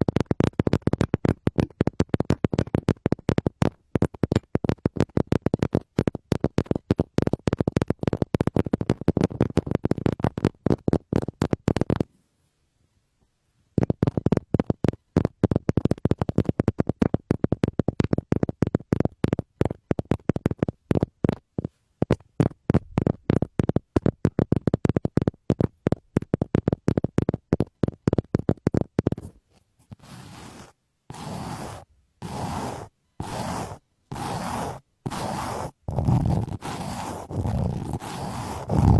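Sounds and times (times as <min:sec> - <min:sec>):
slow scraping strokes: 0:29.5 - 0:38.9.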